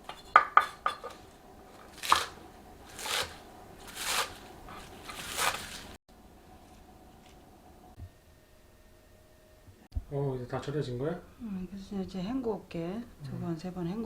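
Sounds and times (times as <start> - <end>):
knife chopping vegetables on board: 1.8 - 5.9.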